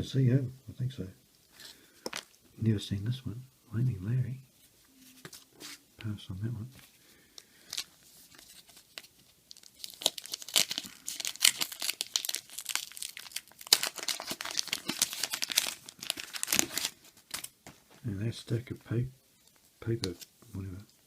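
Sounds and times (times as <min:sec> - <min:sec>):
paper wrapper tearing and crinkling: 0:07.7 - 0:17.6.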